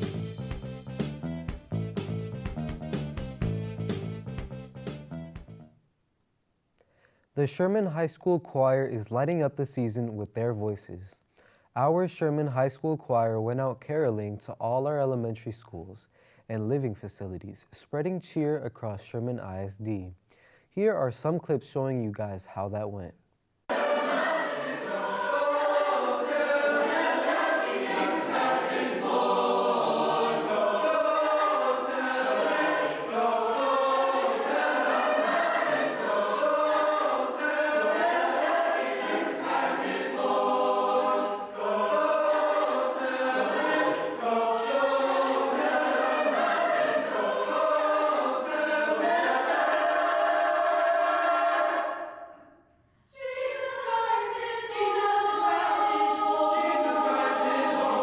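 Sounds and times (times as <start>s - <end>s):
choir singing carols: 23.7s - 52.5s, 53.1s - 58.0s.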